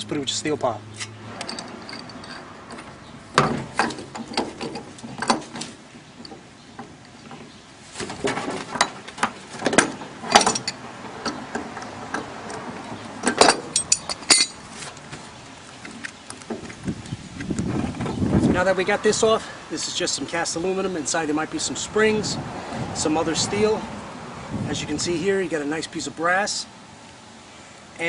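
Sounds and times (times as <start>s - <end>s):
hand tools clanking on metal: 1.0s - 14.6s.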